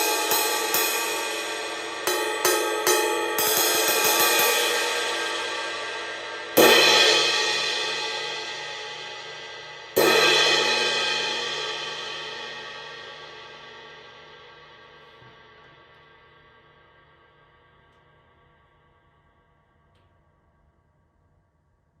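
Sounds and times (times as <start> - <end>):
crash cymbal struck and ringing: 0.0 - 15.0.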